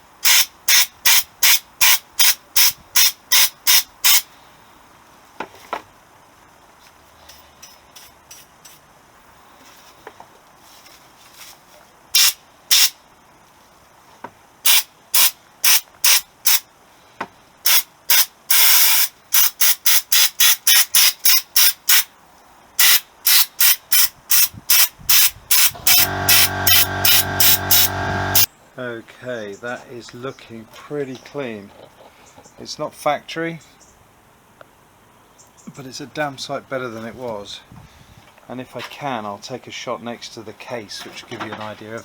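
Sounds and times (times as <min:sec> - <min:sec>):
compressed air blasts: 0:12.2 - 0:13.0, 0:22.8 - 0:28.5.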